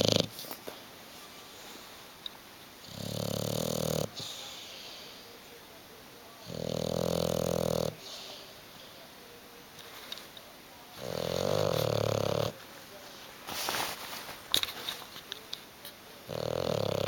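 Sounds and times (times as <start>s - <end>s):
dog snoring: 0.0s - 0.3s, 2.8s - 4.4s, 6.4s - 8.0s, 11.0s - 12.6s, 16.3s - 17.0s.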